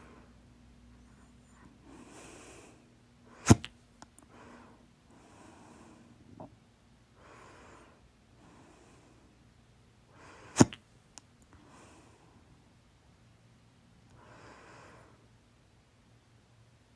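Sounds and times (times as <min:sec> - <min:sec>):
soft breaths: 0:00.0 - 0:06.5, 0:07.1 - 0:09.5, 0:10.1 - 0:10.8, 0:11.5 - 0:12.7, 0:14.0 - 0:15.4.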